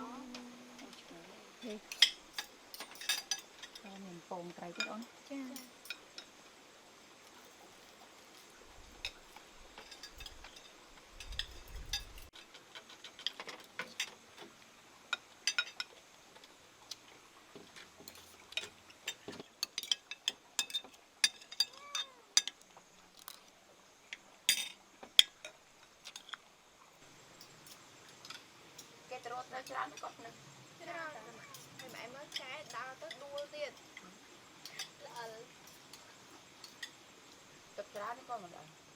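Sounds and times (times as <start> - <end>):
spoons clinking against bowls: 1.6 - 4.0, 8.4 - 12.3, 19.6 - 22.6, 24.5 - 25.5.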